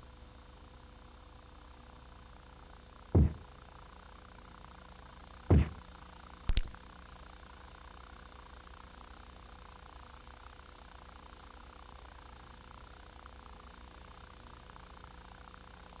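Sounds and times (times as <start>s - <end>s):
dull thumps: 3.2s - 3.5s, 5.5s - 5.8s
sharp double knock: 3.2s - 3.5s, 5.5s - 5.8s.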